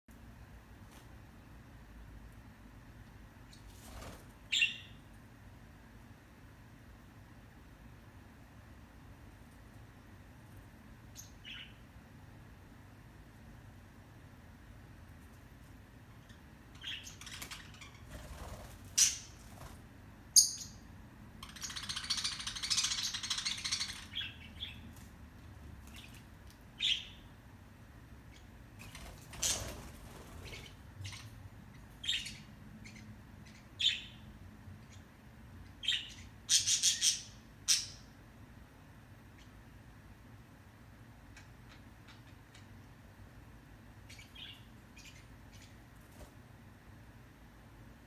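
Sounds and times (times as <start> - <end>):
budgerigars chirping and squawking: 16.2 - 19.4, 21.4 - 24.8, 28.3 - 34.3, 35.7 - 38.1, 44.1 - 45.8.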